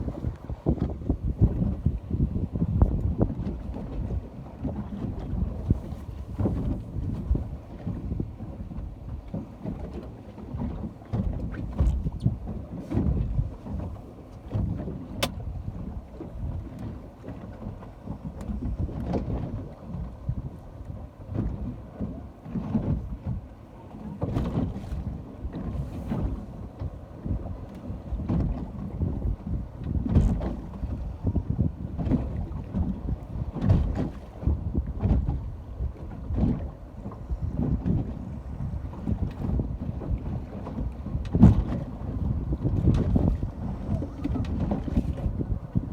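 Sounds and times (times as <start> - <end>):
surf washing on beach: 0.0 - 0.6
wind buffeting microphone: 0.0 - 45.9.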